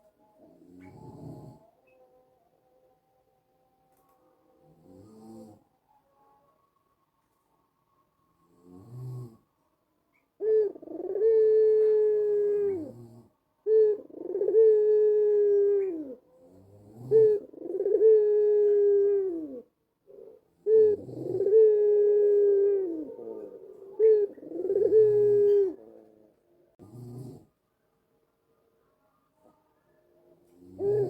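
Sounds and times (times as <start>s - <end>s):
dove cooing: 0.0s - 2.0s, 10.1s - 26.2s, 30.6s - 31.0s.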